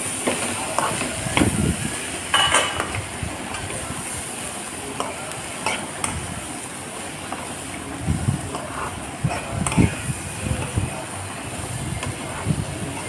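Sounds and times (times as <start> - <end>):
vegetables sizzling in a pan: 0.0 - 13.0.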